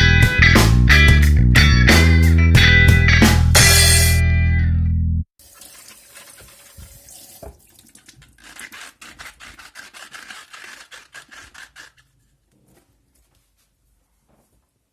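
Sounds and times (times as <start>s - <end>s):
tap water running: 5.4s - 8.4s
fingers squeaking on apple skin: 8.4s - 12.3s.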